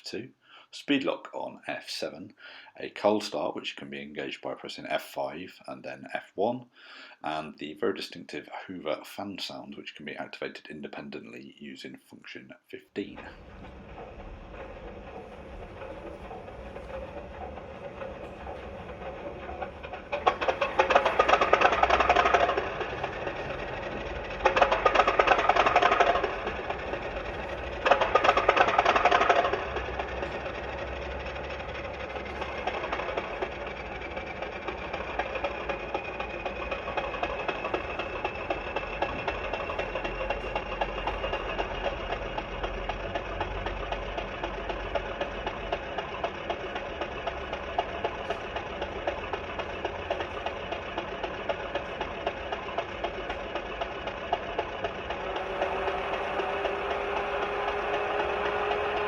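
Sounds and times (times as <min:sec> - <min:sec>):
diesel locomotive engine knocking: 0:13.0 - 0:59.0
rising whine: 0:13.2 - 0:59.0.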